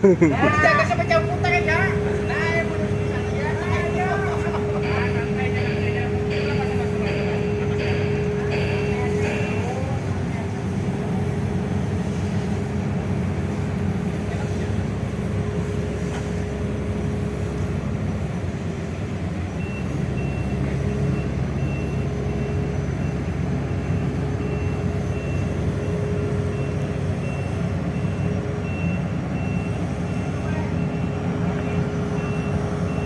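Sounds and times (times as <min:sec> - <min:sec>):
constant whine: 0:00.0 - 0:18.8
heavy diesel engine running: 0:00.0 - 0:33.0
backup alarm beeping: 0:00.4 - 0:10.2, 0:19.6 - 0:33.0.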